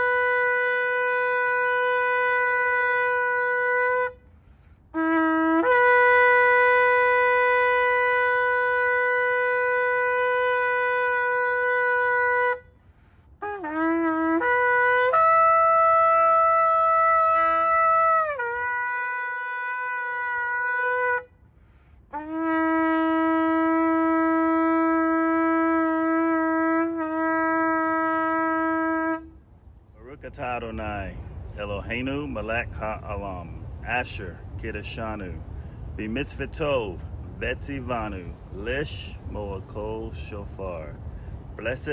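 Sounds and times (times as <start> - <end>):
shofar blasts: 0.0 - 12.8, 13.4 - 29.4.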